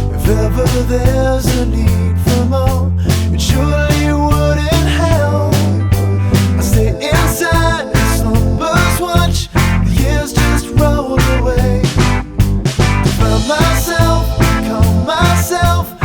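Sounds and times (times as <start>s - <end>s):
upbeat rock song: 0.0s - 16.0s.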